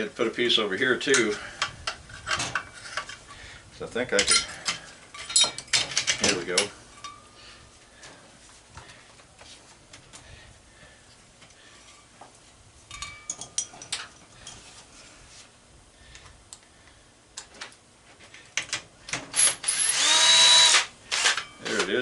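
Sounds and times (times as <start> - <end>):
metal hand tools clicking and rattling: 12.9 - 14.6
power drill running: 19.3 - 21.4.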